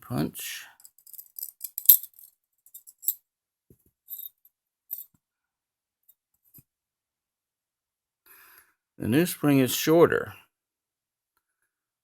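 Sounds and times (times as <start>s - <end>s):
small metal parts clicking: 0.8s - 3.2s.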